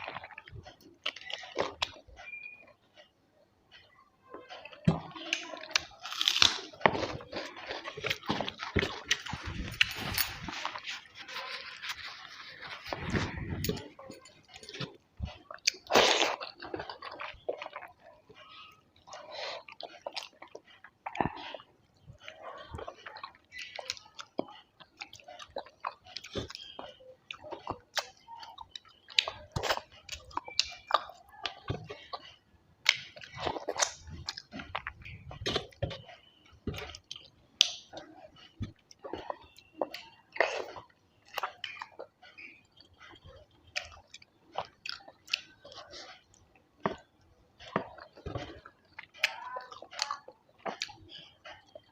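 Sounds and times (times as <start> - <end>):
person chewing with mouth smacks: 0.0 - 51.9.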